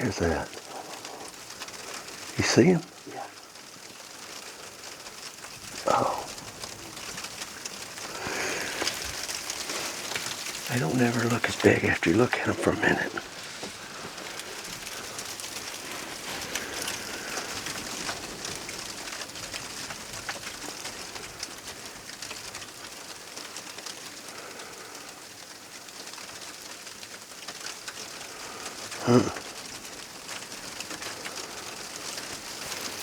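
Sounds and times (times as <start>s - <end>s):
wind-driven snow pelting: 0.0s - 33.0s.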